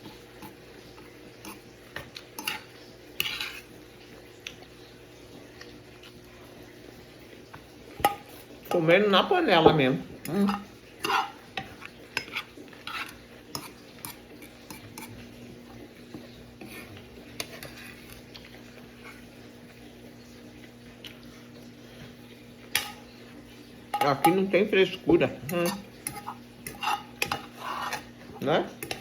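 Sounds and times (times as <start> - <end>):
faint steady hum: 0.0 - 29.0
cutlery clinking against cooking pot: 23.9 - 24.5, 25.1 - 28.2, 28.8 - 29.0.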